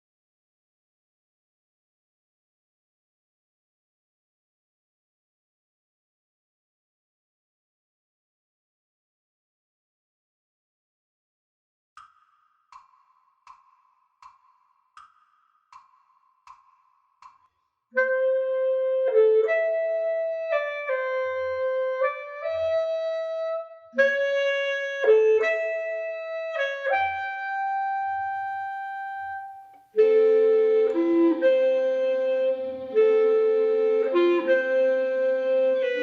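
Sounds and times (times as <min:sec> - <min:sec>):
clarinet-like woodwind melody: 0:18.0 - 0:36.0.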